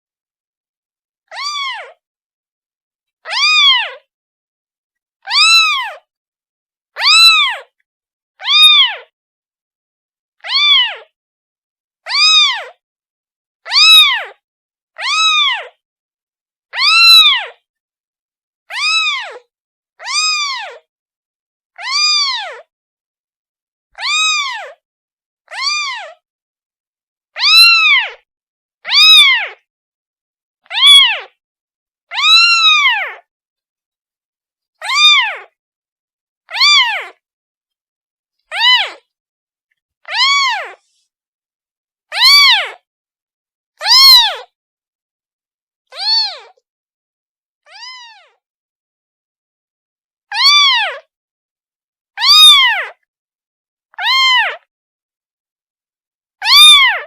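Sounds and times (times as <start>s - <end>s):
kitten meowing: 1.3s - 2.0s, 3.3s - 4.1s, 5.3s - 6.0s, 7.0s - 7.7s, 8.4s - 9.1s, 10.4s - 11.1s, 12.1s - 12.8s, 13.7s - 14.4s, 15.0s - 15.8s, 16.8s - 17.5s, 18.7s - 20.8s, 21.8s - 22.7s, 24.0s - 24.8s, 25.5s - 26.2s, 27.4s - 28.2s, 28.9s - 29.6s, 30.7s - 31.4s, 32.1s - 33.3s, 34.8s - 35.5s, 36.5s - 37.2s, 38.5s - 39.1s, 40.1s - 40.9s, 42.1s - 42.8s, 43.8s - 44.5s, 45.9s - 46.6s, 47.7s - 48.4s, 50.3s - 51.1s, 52.2s - 53.0s, 54.0s - 54.7s, 56.4s - 57.0s.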